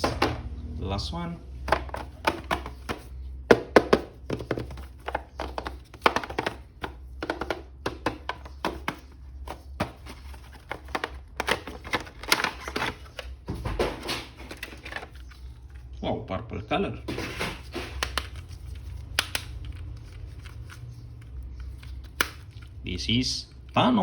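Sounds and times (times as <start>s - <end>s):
plastic toy packaging clicks and taps: 1.7s - 13.4s, 18.0s - 22.8s.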